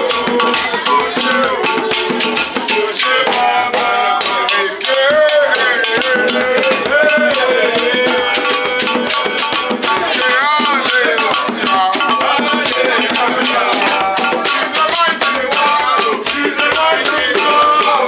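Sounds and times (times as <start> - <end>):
percussion beat: 0.0 - 18.0
wavering melody: 4.2 - 18.0.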